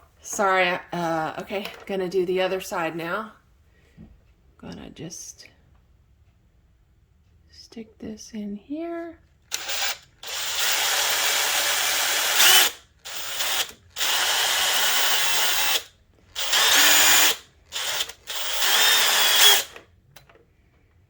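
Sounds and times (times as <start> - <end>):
power drill running in bursts: 9.5 - 19.8.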